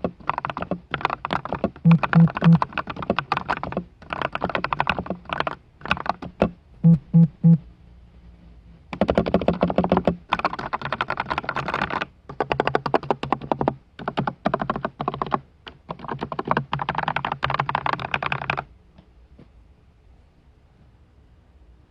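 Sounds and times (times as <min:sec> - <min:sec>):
fast mechanical keyboard typing: 0:00.0 - 0:06.6, 0:08.9 - 0:18.7.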